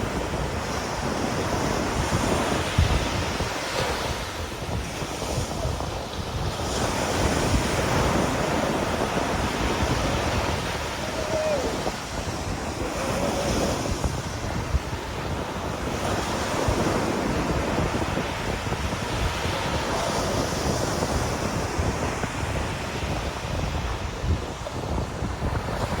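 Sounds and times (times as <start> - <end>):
ocean surf washing in: 0.0 - 26.0
wind buffeting microphone: 0.0 - 26.0.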